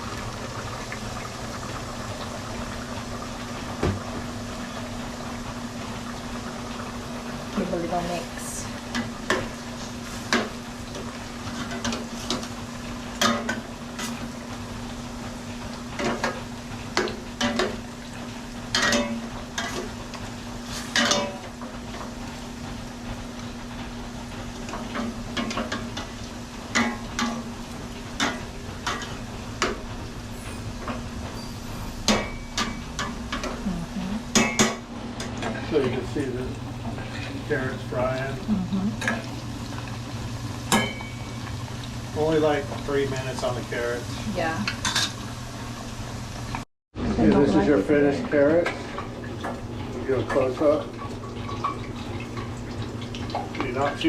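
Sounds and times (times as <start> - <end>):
food sizzling: 0.0 - 54.0
utensil scraping food in a pan: 20.6 - 21.3
low steady hum: 28.2 - 44.8.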